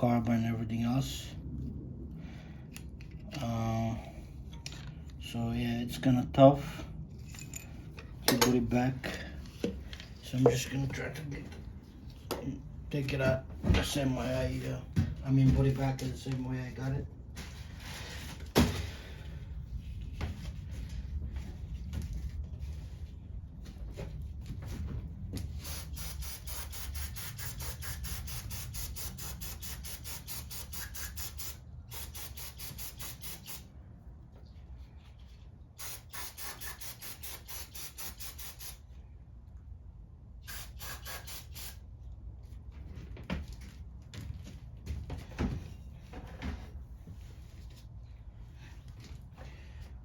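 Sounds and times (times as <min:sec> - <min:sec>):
ratchet wrench clicking: 0:25.8 - 0:33.6, 0:35.8 - 0:38.8, 0:40.4 - 0:41.8.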